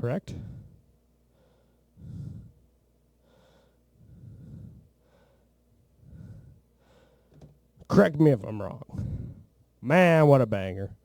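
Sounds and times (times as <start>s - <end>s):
man breathing into microphone: 0.3s - 0.8s, 1.4s - 2.6s, 3.3s - 7.3s, 8.9s - 9.5s.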